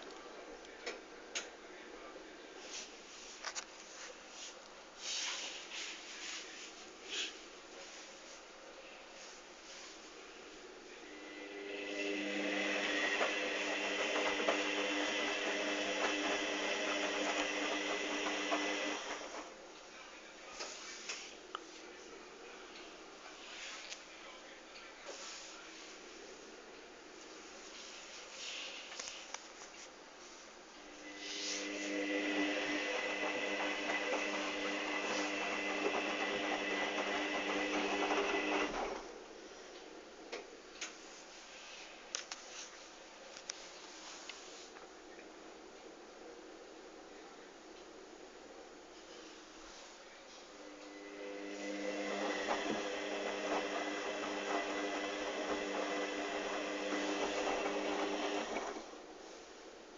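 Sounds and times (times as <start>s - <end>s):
washing machine motor hum: 11.0s - 19.7s, 30.8s - 39.2s, 50.5s - 59.3s.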